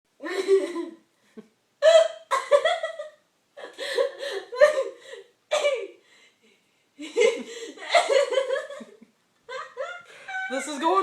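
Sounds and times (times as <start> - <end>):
giggling laughter: 0.2 - 1.0, 7.0 - 10.9.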